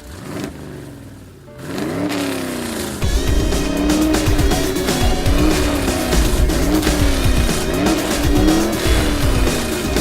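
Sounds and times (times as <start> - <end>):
car engine running: 0.0 - 10.0
tyre noise: 2.7 - 10.0
music: 3.0 - 10.0.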